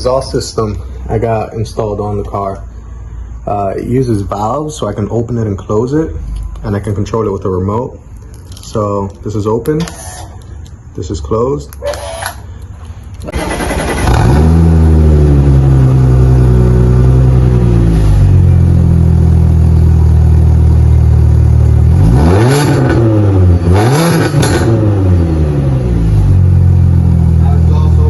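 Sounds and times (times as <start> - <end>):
car engine idling and revving: 13.1 - 28.0.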